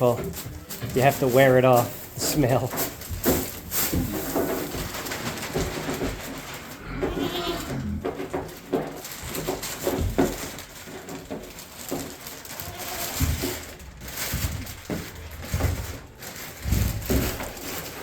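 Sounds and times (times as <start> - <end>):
pigs grunting: 6.7 - 8.2.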